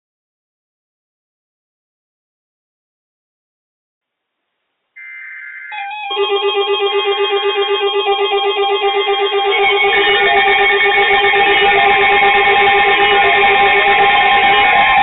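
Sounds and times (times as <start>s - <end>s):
electronic alarm beeping: 5.0s - 15.0s.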